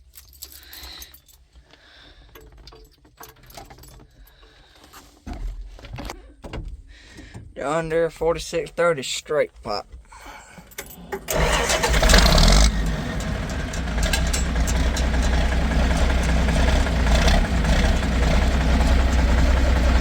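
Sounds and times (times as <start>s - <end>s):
diesel tractor starting and idling: 10.6s - 20.0s.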